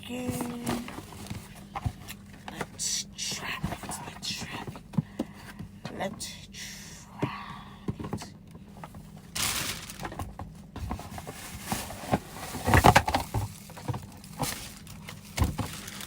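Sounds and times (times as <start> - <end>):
wrapping rustling: 8.8 - 16.0.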